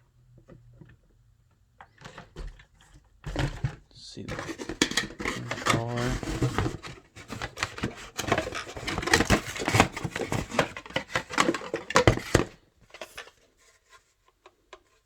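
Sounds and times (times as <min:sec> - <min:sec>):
unpacking clicks and knocks: 0:01.8 - 0:13.5
plastic packaging rustling: 0:01.9 - 0:14.1.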